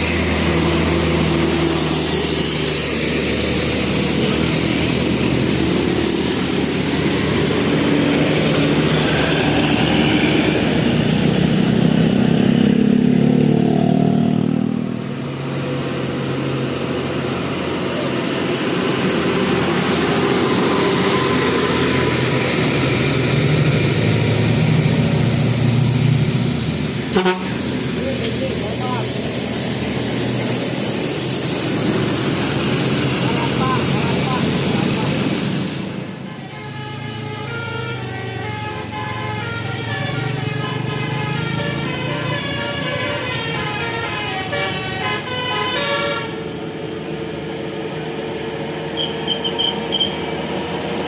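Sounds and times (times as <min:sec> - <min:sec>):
bus diesel engines: 0:00.0 - 0:51.0
heavy road traffic: 0:00.0 - 0:51.0.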